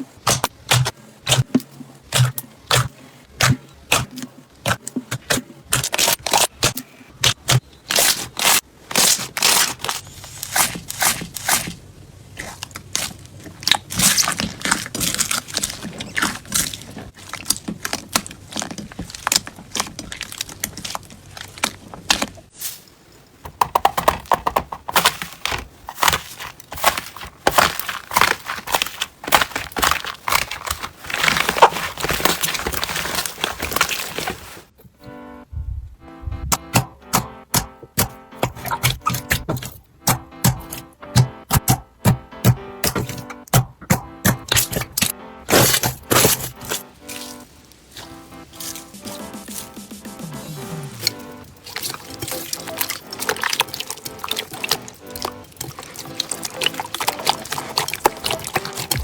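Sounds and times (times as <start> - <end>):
slime crackling and popping: 0.0 - 11.8, 12.4 - 22.6, 25.0 - 34.6, 36.6 - 59.0.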